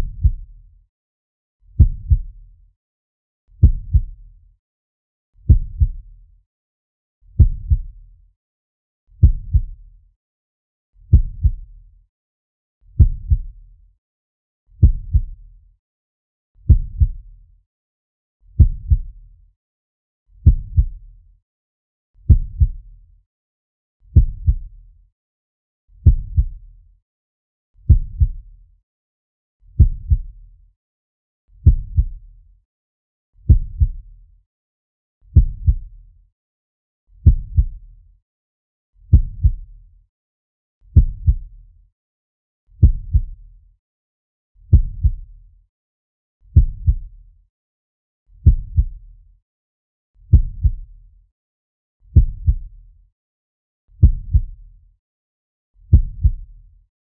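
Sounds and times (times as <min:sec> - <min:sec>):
heartbeat double thump: 0:01.8 - 0:02.3, 0:03.6 - 0:04.1, 0:05.5 - 0:06.0, 0:07.4 - 0:07.9, 0:09.2 - 0:09.7, 0:11.1 - 0:11.6, 0:13.0 - 0:13.5, 0:14.8 - 0:15.3, 0:16.7 - 0:17.2, 0:18.6 - 0:19.1, 0:20.4 - 0:20.9, 0:22.3 - 0:22.8, 0:24.2 - 0:24.6, 0:27.9 - 0:28.4, 0:29.8 - 0:30.3, 0:31.6 - 0:32.1, 0:33.5 - 0:34.0, 0:35.4 - 0:35.9, 0:37.2 - 0:37.7, 0:39.1 - 0:39.6, 0:41.0 - 0:41.4, 0:42.8 - 0:43.3, 0:46.6 - 0:47.0, 0:48.4 - 0:48.9, 0:50.3 - 0:50.8, 0:52.2 - 0:52.7, 0:54.0 - 0:54.5, 0:55.9 - 0:56.4.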